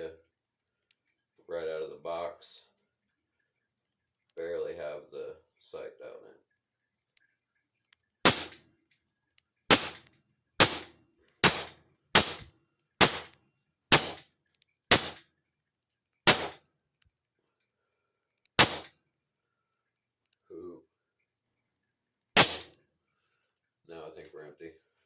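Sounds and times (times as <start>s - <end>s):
air pistol shots cracking: 8.3s - 8.6s, 9.7s - 14.2s, 14.9s - 15.2s, 16.3s - 16.6s, 18.6s - 18.9s, 22.4s - 22.8s.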